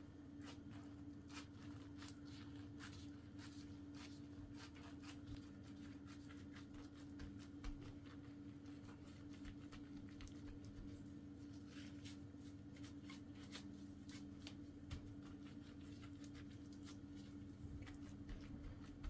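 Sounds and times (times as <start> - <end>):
low electrical hum: 0.0 - 19.0.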